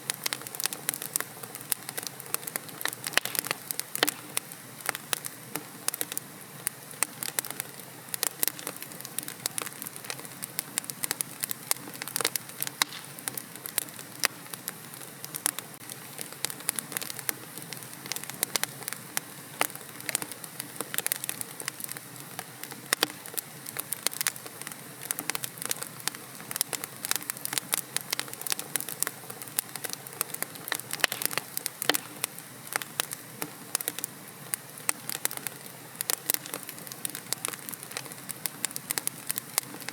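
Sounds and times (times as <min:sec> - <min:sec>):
fire crackling and popping: 0:00.0 - 0:39.9
flames hissing: 0:00.1 - 0:25.2.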